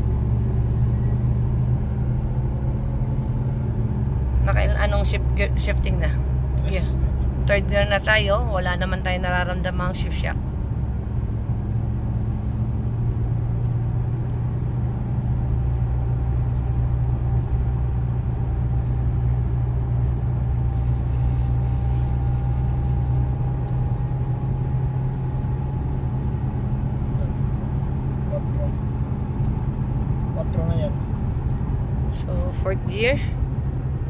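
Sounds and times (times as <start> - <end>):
car engine and road rumble: 0.0 - 34.0
faint steady whine: 16.2 - 34.0.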